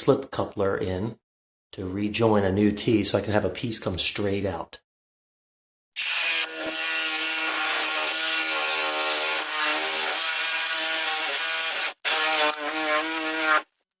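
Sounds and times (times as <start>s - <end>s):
power saw cutting pipe: 6.0s - 13.7s.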